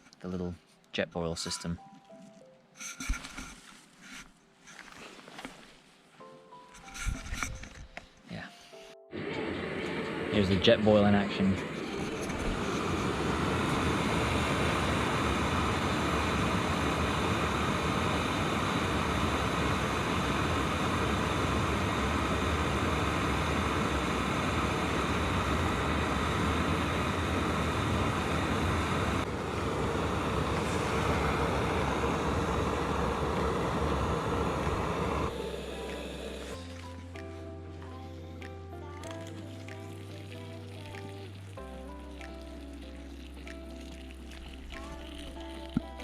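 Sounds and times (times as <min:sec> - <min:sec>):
gas stove burner roaring hiss: 0:09.2 - 0:36.8.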